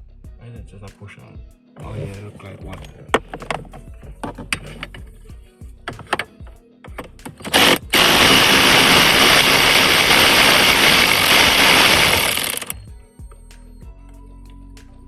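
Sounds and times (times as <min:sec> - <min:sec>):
power driver whirring: 0:07.0 - 0:12.8.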